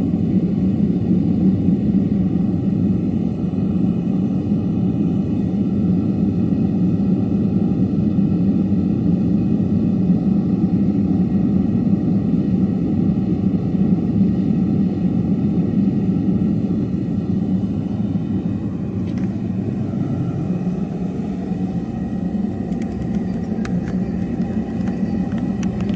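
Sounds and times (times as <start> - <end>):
furnace burner rumbling: 16.8 - 25.9.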